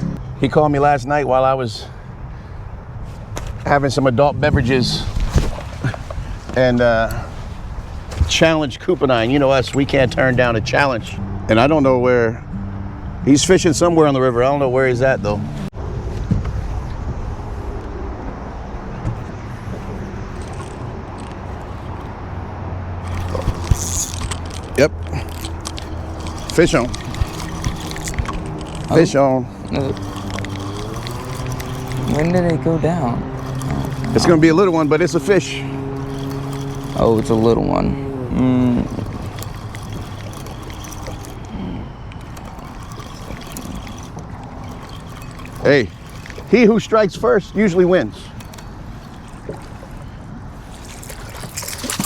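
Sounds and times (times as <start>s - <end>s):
boat motor humming: 0.0s - 0.5s, 2.1s - 52.0s
wind: 0.0s - 52.0s
water noise: 3.0s - 52.0s.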